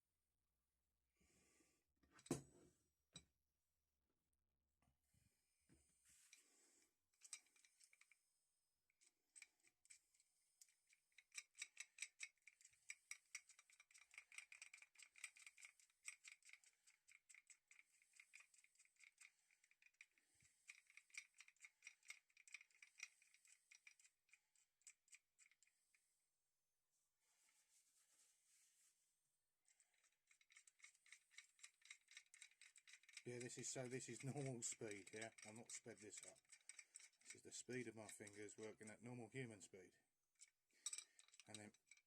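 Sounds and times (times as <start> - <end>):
wrench thumb wheel clicking: 10.6 - 25.7, 29.9 - 38.4.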